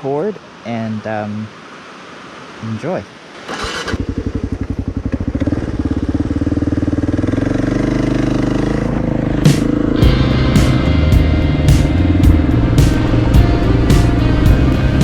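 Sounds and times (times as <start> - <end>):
motorcycle engine running: 3.6 - 15.0.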